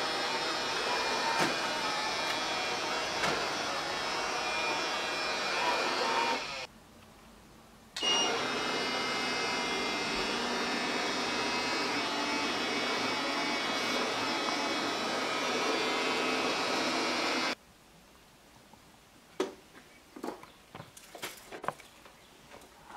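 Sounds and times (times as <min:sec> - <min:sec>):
robotic vacuum cleaner whirring: 0:00.0 - 0:06.7, 0:08.0 - 0:17.6.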